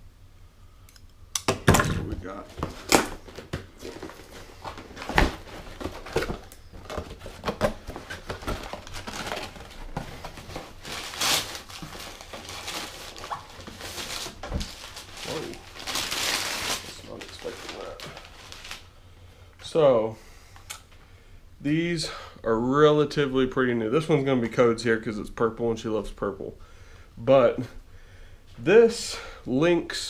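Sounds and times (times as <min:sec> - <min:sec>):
packaging scraping and crinkling: 0:02.5 - 0:18.9.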